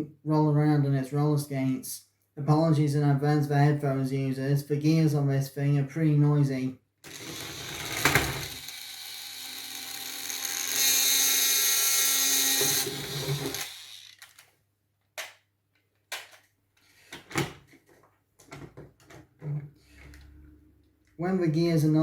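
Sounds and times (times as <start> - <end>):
toy motor whirring: 7.0 - 14.5.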